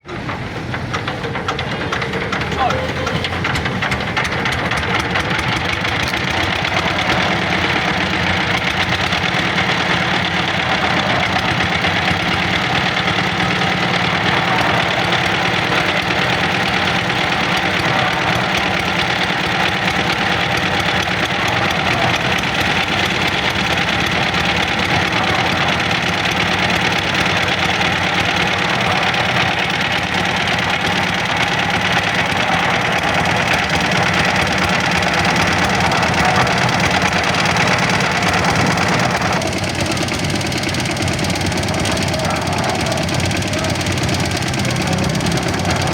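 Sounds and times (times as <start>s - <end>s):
concrete mixer engine running: 0.0s - 45.9s
fast even knocking pulse: 0.2s - 45.9s.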